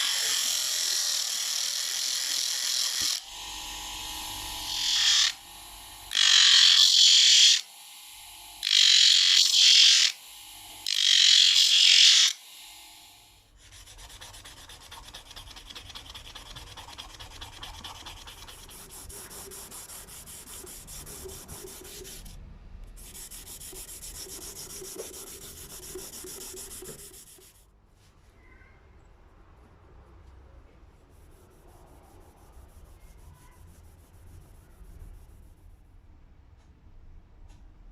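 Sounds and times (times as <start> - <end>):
abrasive rubbing on knife: 13.7 - 22.3, 23.0 - 27.6.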